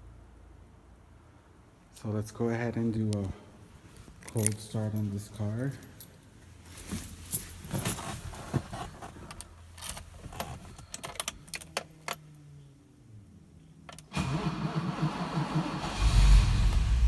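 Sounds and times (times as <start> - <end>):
keys jangling: 4.2 - 5.1
car starter cranking engine: 13.9 - 17.0.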